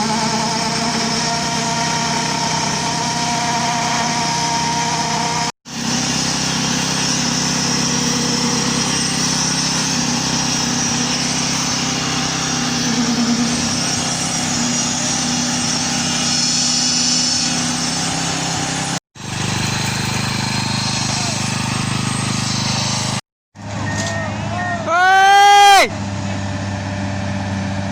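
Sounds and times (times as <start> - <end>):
construction machinery engine humming: 0.0 - 27.9.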